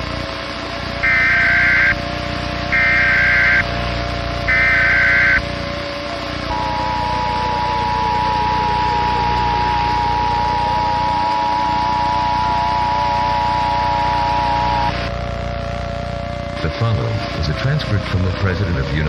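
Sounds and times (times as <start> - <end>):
low hum: 0.0 - 18.8
two-tone alert signal: 1.0 - 2.0, 2.6 - 3.8, 4.4 - 5.5, 6.4 - 14.9.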